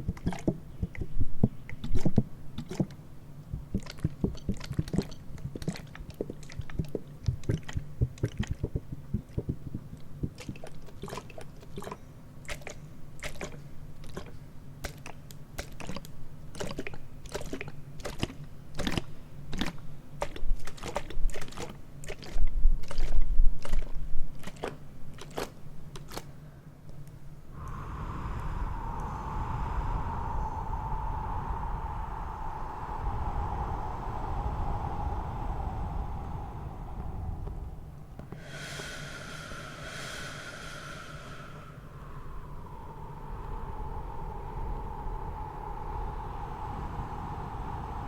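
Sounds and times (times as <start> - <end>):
faint low hum: 27.4 - 48.0
low rumble: 27.5 - 48.0.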